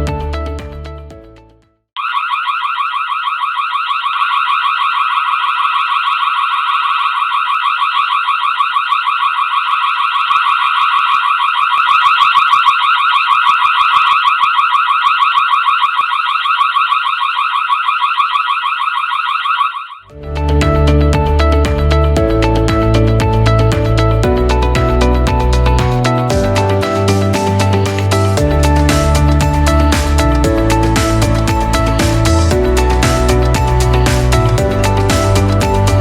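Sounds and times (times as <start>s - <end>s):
loud electronic alarm siren: 2.0s - 36.0s.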